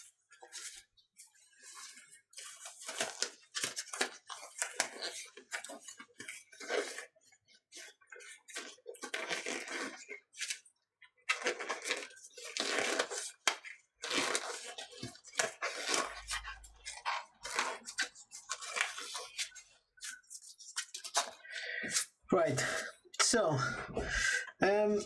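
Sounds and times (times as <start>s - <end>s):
rustling and crinkling handling: 0.0s - 23.4s.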